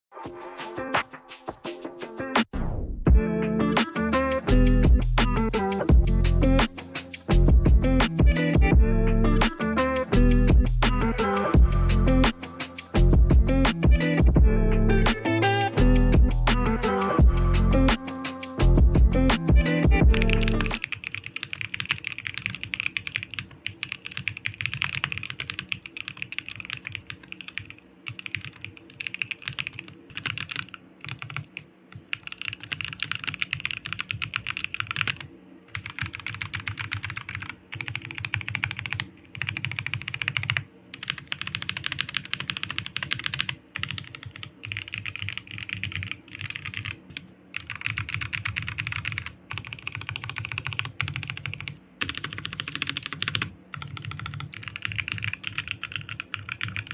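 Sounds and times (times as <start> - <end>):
typing on mechanical keyboard: 20.4 - 56.9.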